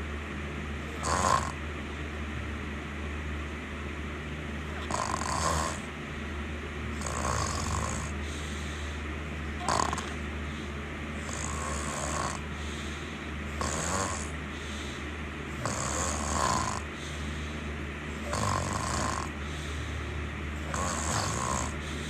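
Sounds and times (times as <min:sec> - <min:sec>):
steady low hum: 0:00.0 - 0:22.0
snoring: 0:00.9 - 0:01.6, 0:04.7 - 0:05.9, 0:06.9 - 0:09.0, 0:09.6 - 0:17.5, 0:18.1 - 0:20.0, 0:20.6 - 0:22.0.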